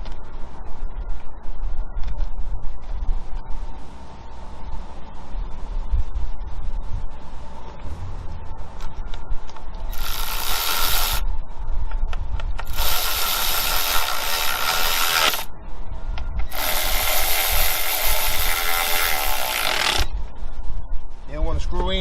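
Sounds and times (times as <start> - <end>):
power tool driving bolts: 9.9 - 11.2, 12.7 - 15.5, 16.5 - 20.1.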